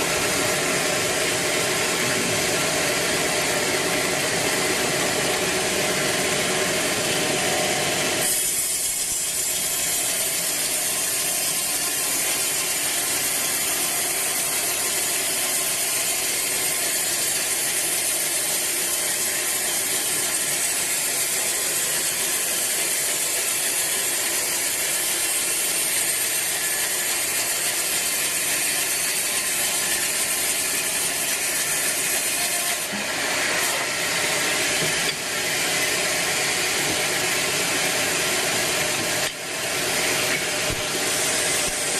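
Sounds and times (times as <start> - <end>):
bandsaw cutting log: 0.0 - 41.9.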